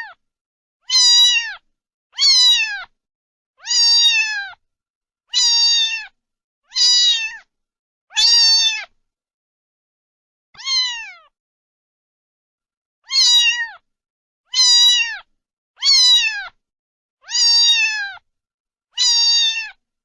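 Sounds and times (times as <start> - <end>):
cat meowing: 0.0 - 0.2, 0.8 - 1.6, 2.2 - 3.0, 3.6 - 4.6, 5.3 - 7.5, 8.1 - 9.0, 10.6 - 11.3, 13.0 - 13.8, 14.5 - 16.6, 17.2 - 18.2, 19.0 - 19.8.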